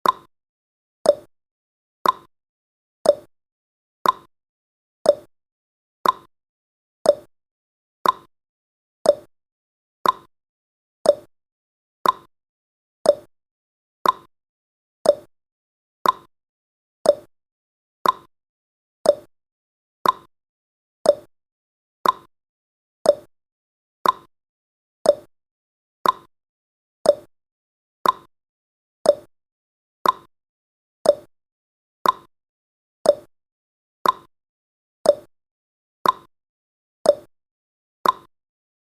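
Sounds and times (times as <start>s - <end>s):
countdown timer ticking: 1.1s - 1.3s, 5.1s - 5.3s, 7.1s - 7.3s, 9.1s - 9.3s, 11.1s - 11.3s, 13.1s - 13.3s, 15.1s - 15.3s, 17.1s - 17.3s, 18.0s - 18.3s, 19.1s - 19.3s, 21.1s - 21.3s, 23.1s - 23.3s, 25.1s - 25.3s, 26.0s - 26.3s, 27.1s - 27.3s, 28.0s - 28.3s, 29.1s - 29.3s, 30.0s - 30.3s, 31.1s - 31.3s, 32.0s - 32.3s, 33.1s - 33.3s, 34.0s - 34.3s, 35.1s - 35.3s, 36.0s - 36.3s, 37.1s - 37.3s, 38.0s - 38.3s.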